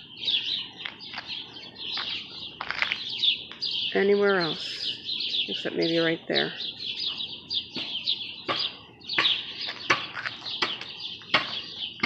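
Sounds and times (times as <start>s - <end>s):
songbirds chirping: 0.0s - 12.0s
sharp knocks: 8.5s - 11.6s.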